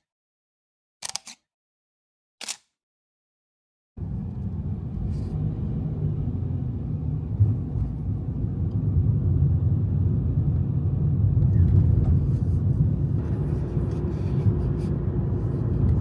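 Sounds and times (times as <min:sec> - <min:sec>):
car rumbling on road: 0:04.0 - 0:16.0.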